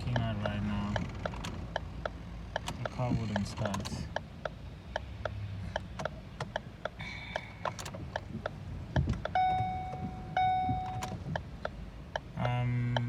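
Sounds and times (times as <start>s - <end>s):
dashboard clicking: 0.0s - 13.0s
long warning chimes: 9.3s - 11.1s.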